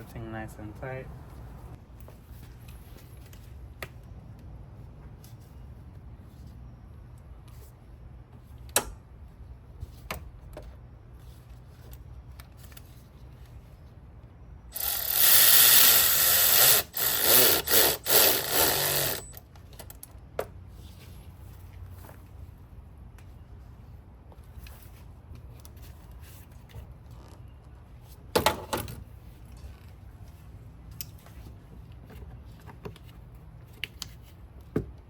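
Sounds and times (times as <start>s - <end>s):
power tool driving screws: 14.7s - 19.4s.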